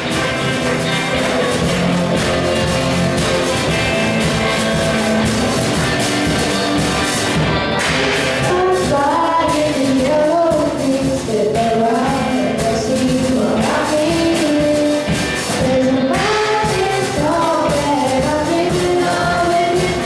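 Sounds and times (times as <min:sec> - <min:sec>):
band playing: 0:00.0 - 0:20.0
steady drum beat: 0:00.0 - 0:20.0
person singing: 0:07.8 - 0:20.0.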